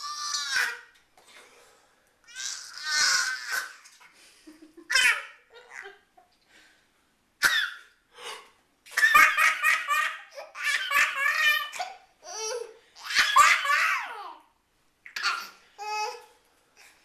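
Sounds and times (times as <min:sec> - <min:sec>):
toddler laughing: 0:04.7 - 0:06.1, 0:08.9 - 0:14.4.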